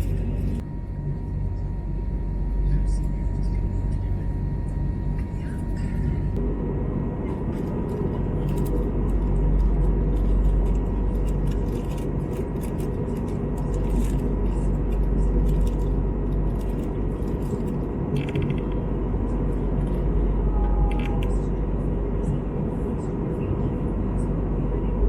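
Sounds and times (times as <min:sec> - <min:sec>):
low drone of aircraft engines: 0:00.0 - 0:25.0
faint cabin clicks and rattles: 0:07.3 - 0:21.6.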